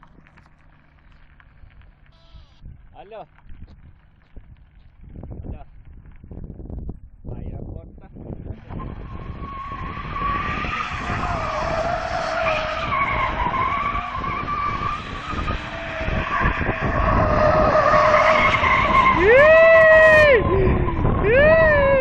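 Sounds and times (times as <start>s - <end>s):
car engine rumbling: 0.0s - 22.0s
tyres squealing: 8.7s - 21.6s.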